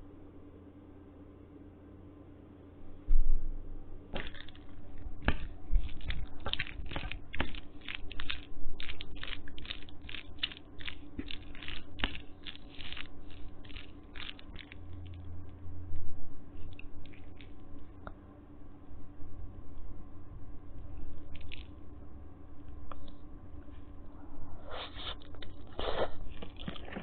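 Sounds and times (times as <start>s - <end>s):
chewing and mouth smacks: 4.1s - 15.3s, 16.6s - 18.2s, 21.0s - 21.8s, 24.9s - 27.0s.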